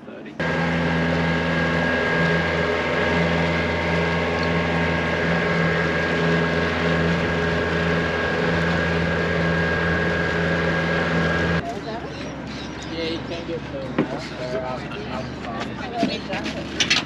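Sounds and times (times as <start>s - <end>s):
boat engine running steadily: 0.3s - 11.7s.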